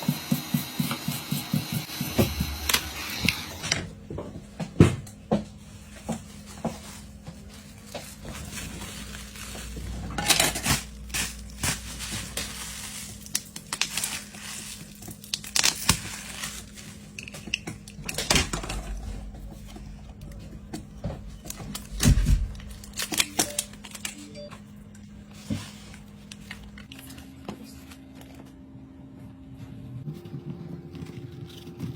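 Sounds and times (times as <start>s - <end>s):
steady low hum: 1.5s - 14.7s.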